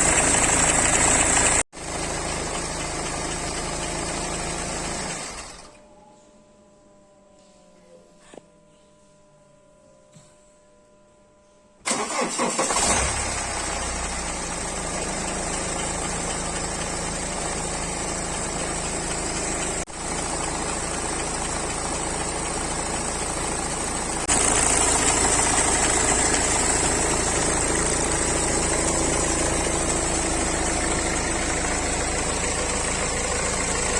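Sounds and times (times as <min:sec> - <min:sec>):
engine idling with knocking: 0:00.0 - 0:05.5, 0:13.5 - 0:33.9
car engine cranking and starting: 0:00.0 - 0:05.8, 0:11.8 - 0:33.9.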